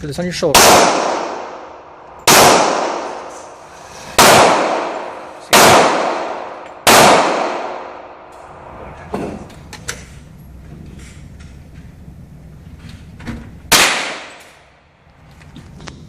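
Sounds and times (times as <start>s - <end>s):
rifle shots echoing: 0.5s - 3.6s, 4.2s - 8.3s, 13.7s - 14.6s.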